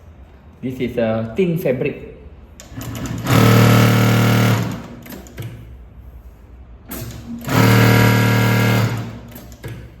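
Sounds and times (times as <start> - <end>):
sewing machine stitching: 2.6 - 5.4, 6.9 - 9.8.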